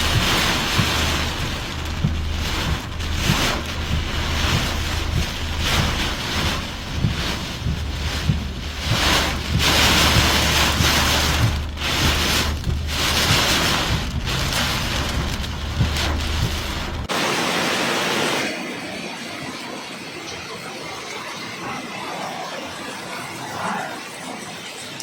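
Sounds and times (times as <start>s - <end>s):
wind buffeting microphone: 0.0s - 17.1s
rushing wind and sea: 0.0s - 25.0s.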